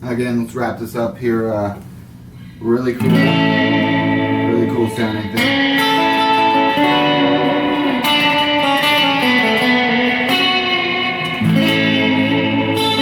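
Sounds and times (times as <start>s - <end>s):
electric guitar chords and notes: 3.0s - 13.0s.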